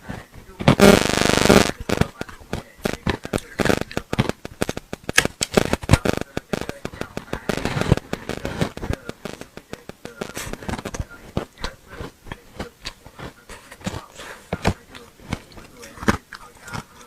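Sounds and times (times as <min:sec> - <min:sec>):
ice being chewed crunching: 0:11.4 - 0:17.0.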